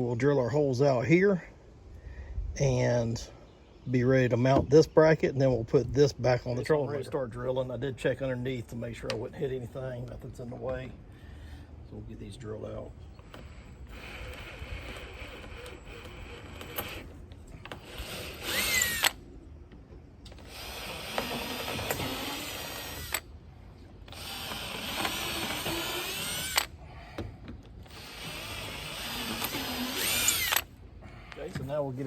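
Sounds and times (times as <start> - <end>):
power drill drilling: 13.2 - 19.2, 20.3 - 23.3, 24.1 - 26.7, 27.8 - 30.7.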